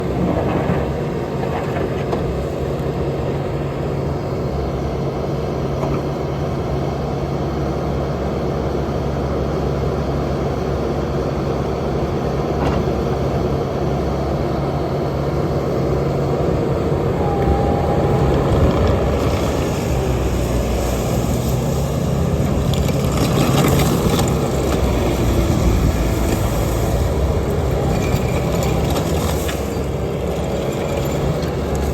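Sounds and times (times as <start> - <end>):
diesel engine running: 0.0 - 31.9
high-pitched machine noise: 16.4 - 20.9.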